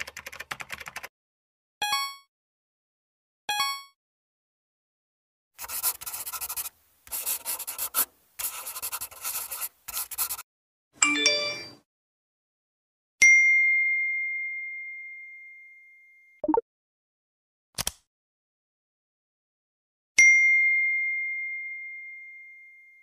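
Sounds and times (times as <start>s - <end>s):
bright tone jingle: 11.0s - 11.8s
high bell-like ding: 13.2s - 16.4s, 20.2s - 23.0s.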